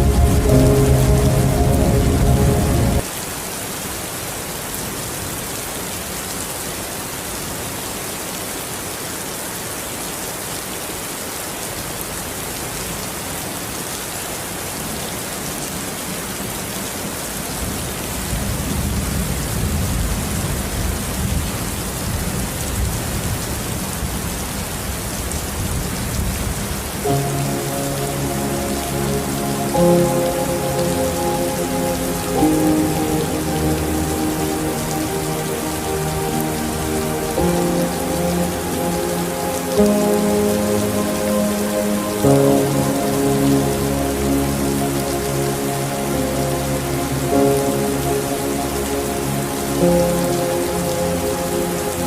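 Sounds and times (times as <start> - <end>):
low rumble: 0.0 - 3.1
soft music with held notes: 0.0 - 3.1, 27.0 - 52.0
heavy rain hissing: 0.0 - 52.0.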